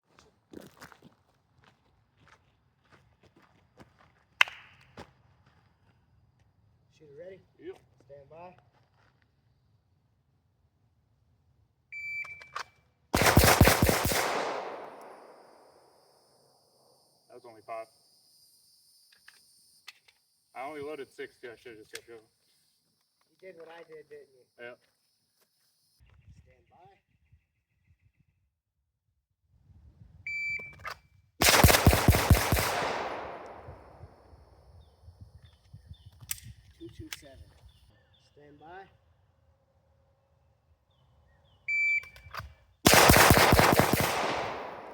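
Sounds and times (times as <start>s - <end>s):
pistol shots with echo: 13.2s - 15.8s, 31.4s - 34.2s, 42.9s - 44.9s.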